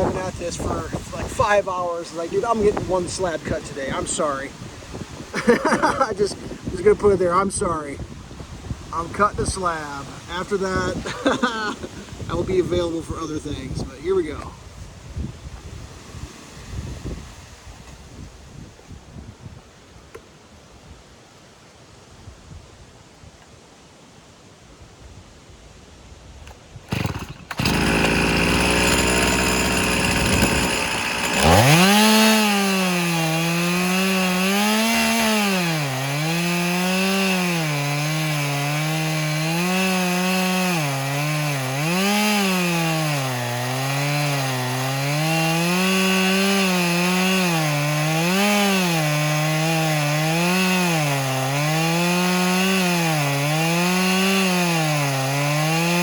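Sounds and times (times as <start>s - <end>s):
chainsaw cutting log: 0.0s - 4.6s, 9.0s - 12.5s, 26.5s - 56.0s.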